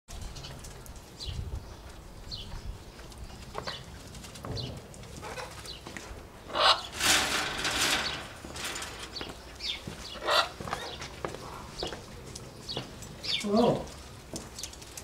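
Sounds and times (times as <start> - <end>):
parrots chirping: 6.4 - 6.9, 9.2 - 11.6
parrot squawking harshly: 6.5 - 6.9.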